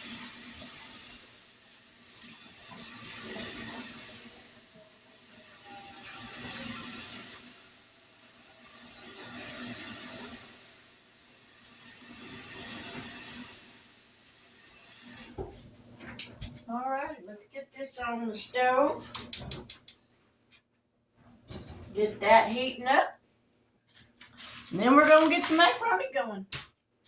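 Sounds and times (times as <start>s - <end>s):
tap water running into a pan: 0.0s - 15.6s.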